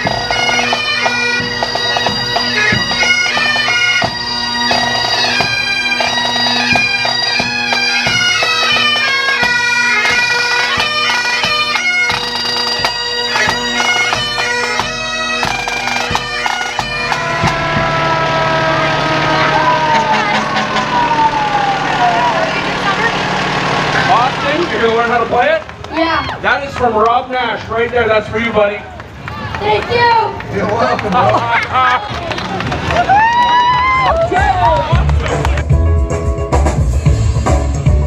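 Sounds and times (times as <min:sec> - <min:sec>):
bagpipes playing: 0:00.0 - 0:26.2
drumbeats: 0:00.0 - 0:27.1, 0:27.8 - 0:38.0
vehicle siren: 0:15.5 - 0:25.2.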